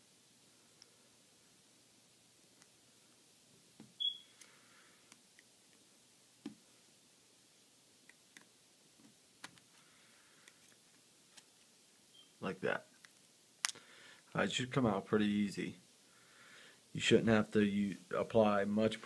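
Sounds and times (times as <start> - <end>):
sharp high squeak: 4.0 - 4.3.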